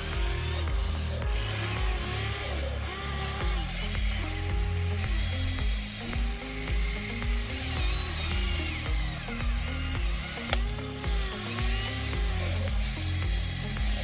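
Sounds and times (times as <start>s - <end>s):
background music with bass: 0.0s - 14.0s
electric motors whining: 0.0s - 14.0s
sharp click: 3.4s - 12.8s.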